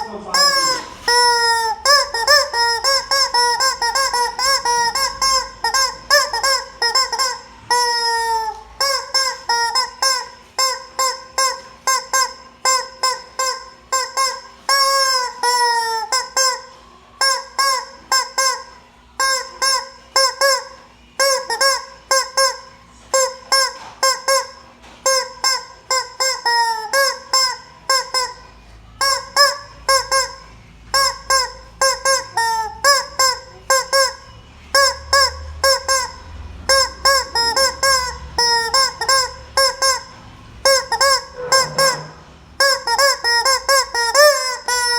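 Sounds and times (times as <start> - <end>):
hen squawking: 0.0 - 10.1, 29.1 - 44.9.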